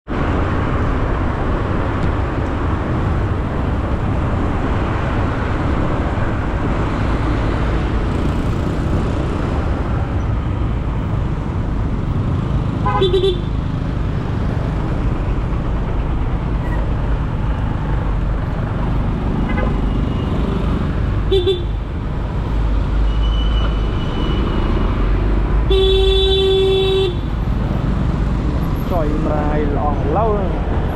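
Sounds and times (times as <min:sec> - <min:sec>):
car engine and road noise: 0:00.0 - 0:30.9
car horn toots: 0:12.8 - 0:13.5.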